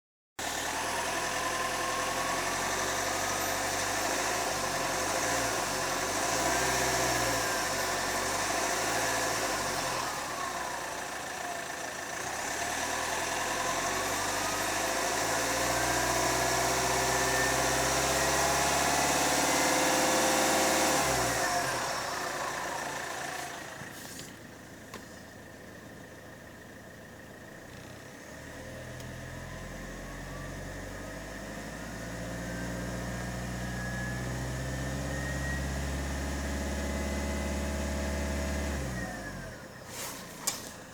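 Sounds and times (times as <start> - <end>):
diesel engine revving: 0.4 - 24.4, 27.6 - 40.9
turbocharger whistle: 32.0 - 37.4.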